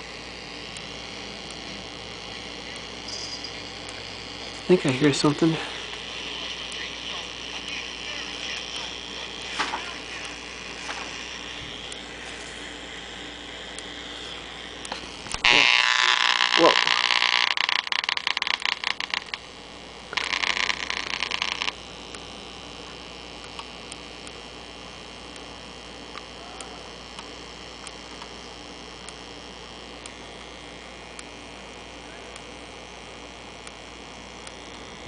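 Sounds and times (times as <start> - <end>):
low hum: 0.0 - 35.0
radio static crackling: 0.0 - 35.0
steady radio hiss: 0.0 - 35.0.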